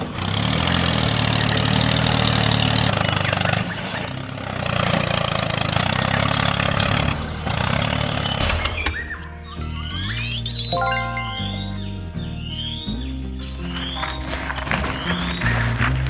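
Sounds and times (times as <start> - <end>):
small engine running: 0.0 - 8.3.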